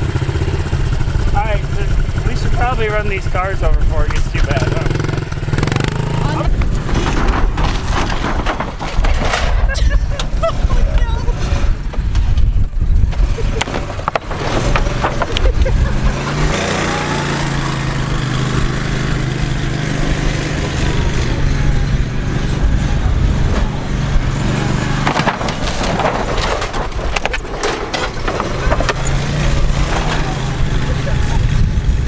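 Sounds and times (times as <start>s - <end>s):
wind rumble on microphone: 0.0s - 16.8s, 17.4s - 25.1s, 28.6s - 32.0s
vehicle engine running: 0.0s - 32.0s
car body crushing: 6.4s - 10.4s, 13.1s - 18.1s, 23.3s - 30.9s.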